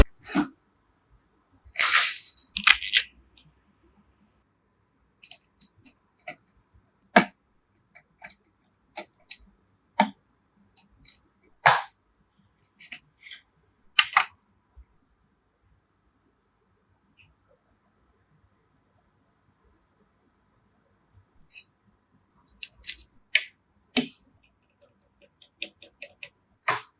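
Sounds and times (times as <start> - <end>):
rustling and scraping: 1.8 - 3.1
plastic and metal parts clicking: 5.2 - 6.5, 7.2 - 8.4, 9.0 - 9.4, 22.5 - 26.9.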